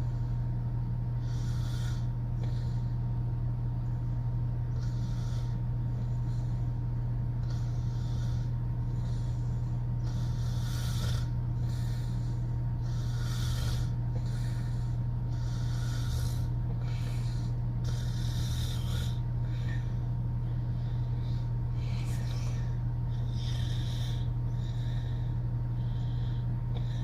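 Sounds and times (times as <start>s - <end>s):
constant low hum: 0.0s - 27.0s
woman snoring: 1.2s - 2.9s, 7.4s - 19.9s.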